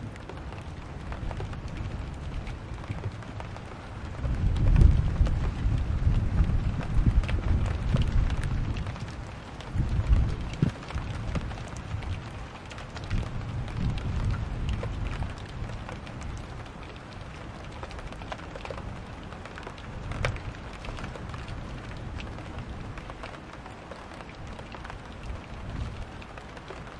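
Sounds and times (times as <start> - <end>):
steady rain falling: 0.0 - 26.9
low thunder rumble: 4.0 - 12.2.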